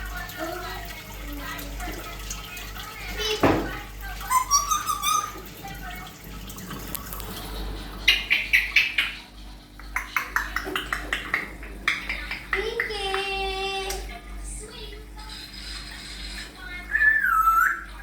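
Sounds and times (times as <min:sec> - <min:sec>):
parrot chirping: 0:04.2 - 0:05.6, 0:06.9 - 0:13.1, 0:15.3 - 0:18.0
parrot clicking: 0:08.1 - 0:14.1.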